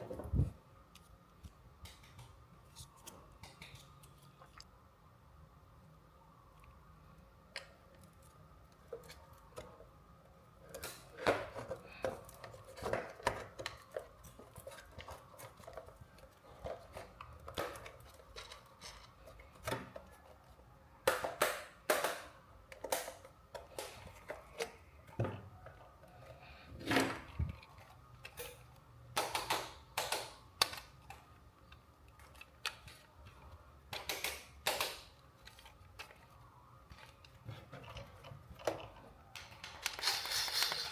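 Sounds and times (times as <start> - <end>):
faint steady hum: 0.0 - 40.0
plastic toys clicking and tapping: 21.0 - 24.8, 27.4 - 40.9.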